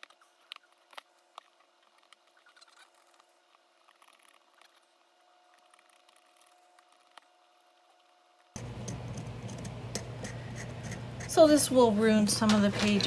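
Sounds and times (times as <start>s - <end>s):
tool clicking and scratching on staple: 8.6s - 11.5s.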